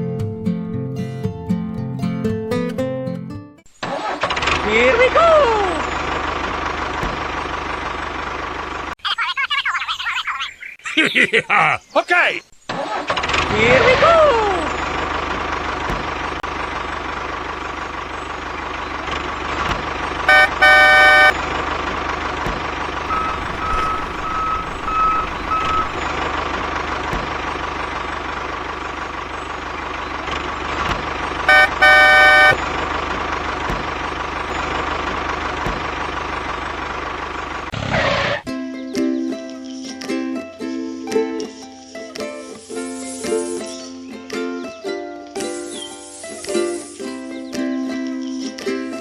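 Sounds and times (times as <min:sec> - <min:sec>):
short beeps: 0:20.3 - 0:21.4, 0:23.1 - 0:26.0, 0:31.5 - 0:32.6
vehicle horn tooting: 0:20.3 - 0:21.4, 0:23.1 - 0:26.0, 0:31.5 - 0:32.6.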